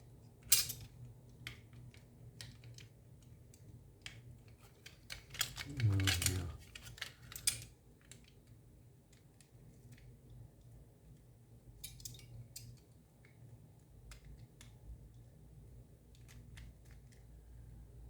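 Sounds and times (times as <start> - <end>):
faint low hum: 5.4 - 6.8.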